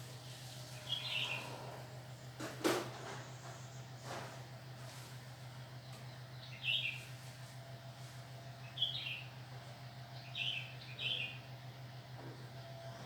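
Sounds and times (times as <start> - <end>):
steady low hum: 0.0 - 13.0
bird chirps: 0.8 - 1.6, 6.4 - 7.0.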